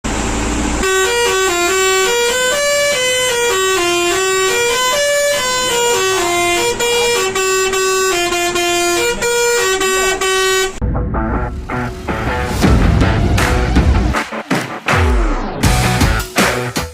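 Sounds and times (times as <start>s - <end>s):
musical air horn tune: 0.8s - 10.8s
rough rumbling noise: 10.7s - 14.2s.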